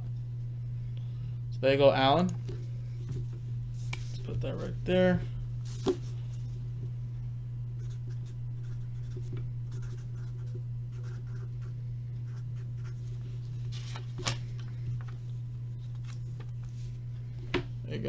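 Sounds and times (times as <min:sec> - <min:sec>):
steady low hum: 0:00.0 - 0:18.0
pen scratching on paper: 0:07.8 - 0:11.7.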